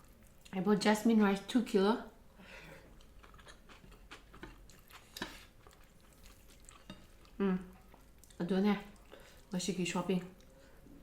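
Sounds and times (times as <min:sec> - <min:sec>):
chewing and mouth sounds: 0:00.0 - 0:00.6, 0:02.8 - 0:10.9.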